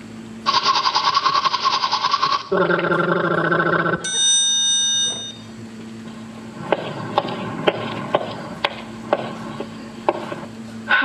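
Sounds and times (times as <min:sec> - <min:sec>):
steady low hum: 0:00.0 - 0:11.0
bell-like chime: 0:04.1 - 0:05.4.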